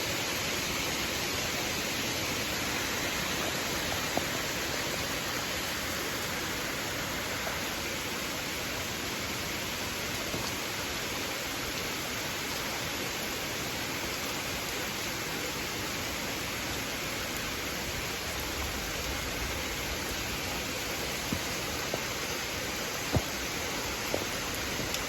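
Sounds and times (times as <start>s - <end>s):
rain falling in a steady hiss: 0.0s - 25.0s.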